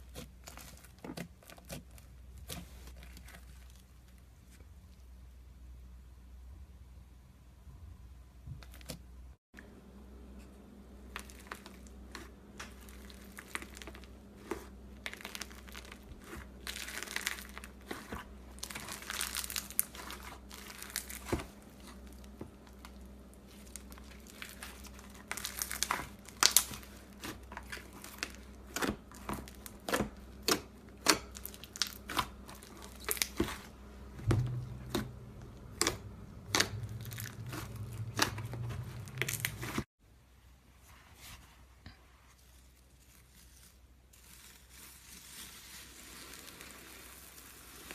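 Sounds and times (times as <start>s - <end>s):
slime squeezed crackling and popping: 12.6s - 33.7s, 35.7s - 39.8s.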